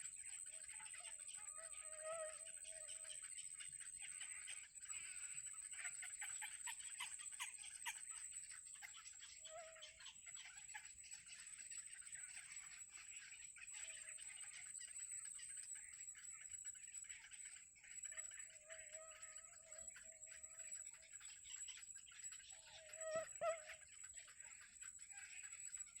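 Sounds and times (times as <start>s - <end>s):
lower bird calls: 18.1s - 24.4s.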